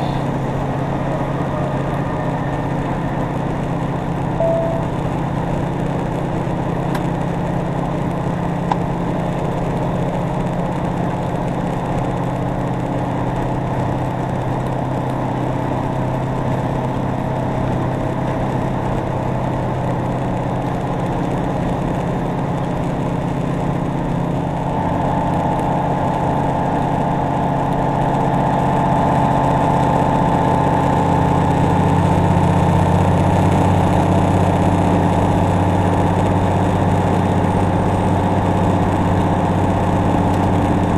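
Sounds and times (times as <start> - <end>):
diesel engine running: 0.0 - 40.9
turbo whistle: 4.4 - 5.0.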